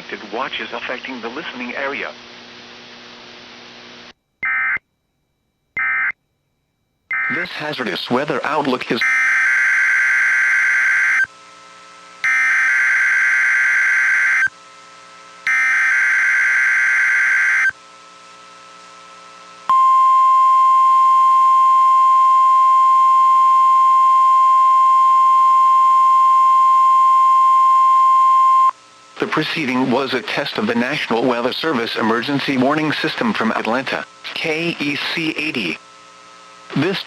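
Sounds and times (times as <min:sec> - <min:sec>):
harsh buzzing data screech: 0:04.4 - 0:04.8, 0:05.8 - 0:06.2, 0:07.1 - 0:07.9, 0:08.9 - 0:11.3, 0:12.2 - 0:14.5, 0:15.5 - 0:17.8
steady high alarm beep: 0:05.8 - 0:06.2, 0:09.0 - 0:11.3, 0:12.2 - 0:14.5, 0:15.5 - 0:17.7.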